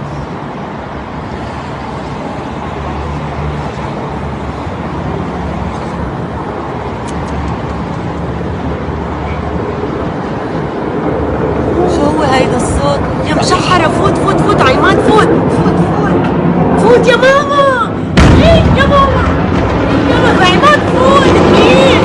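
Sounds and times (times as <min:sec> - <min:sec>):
low rumble: 0:17.9 - 0:22.0.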